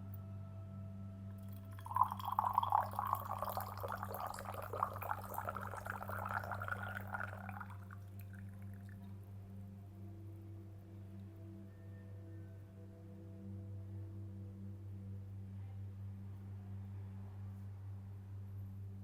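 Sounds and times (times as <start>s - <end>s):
liquid pouring: 1.4s - 8.8s.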